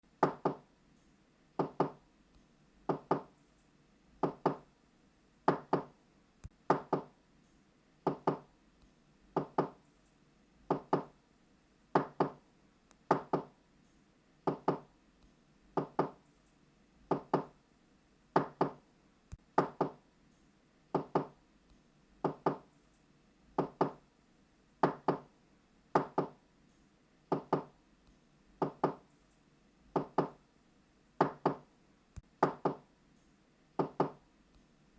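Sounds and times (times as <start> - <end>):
knuckles knocking on a door: 0.2 - 0.6, 1.6 - 2.0, 2.9 - 3.3, 4.2 - 4.7, 5.5 - 5.9, 6.7 - 7.1, 8.1 - 8.5, 9.4 - 9.8, 10.7 - 11.1, 12.0 - 12.4, 13.1 - 13.5, 14.5 - 14.9, 15.8 - 16.2, 17.1 - 17.5, 18.4 - 18.8, 19.6 - 20.0, 20.9 - 21.4, 22.2 - 22.6, 23.6 - 24.0, 24.8 - 25.3, 26.0 - 26.4, 27.3 - 27.7, 28.6 - 29.0, 30.0 - 30.4, 31.2 - 31.6, 32.4 - 32.8, 33.8 - 34.2.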